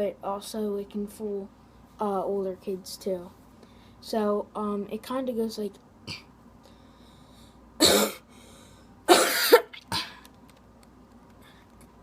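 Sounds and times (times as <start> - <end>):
person coughing: 7.8 - 8.3, 9.1 - 10.2.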